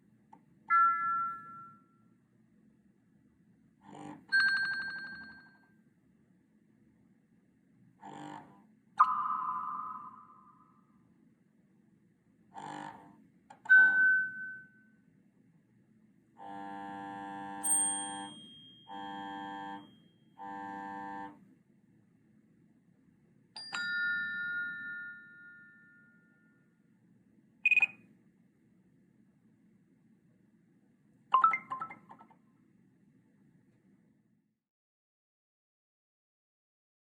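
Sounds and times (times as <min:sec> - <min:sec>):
bright chime: 0:09.0 - 0:10.6, 0:17.7 - 0:18.9
short high blip: 0:09.0 - 0:10.6
two-note ringing chime: 0:09.0 - 0:10.7, 0:17.7 - 0:19.0.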